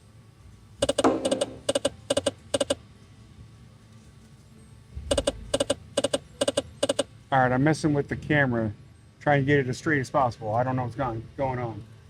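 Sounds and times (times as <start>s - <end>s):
slot machine electronic beeps: 0.8s - 2.8s.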